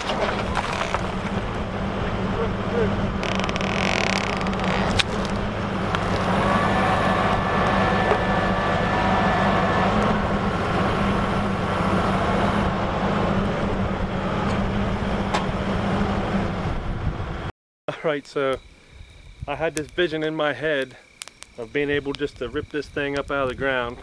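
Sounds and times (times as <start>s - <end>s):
high whine: 0.0s - 16.6s
diesel tractor engines under load: 0.0s - 17.5s.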